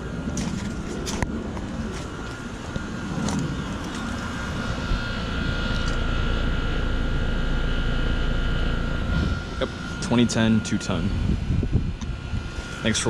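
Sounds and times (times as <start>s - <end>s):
compressor hum: 0.0s - 13.0s
condenser fans rushing: 0.0s - 13.0s
constant whine: 0.0s - 13.0s
wind rumble: 0.0s - 13.0s.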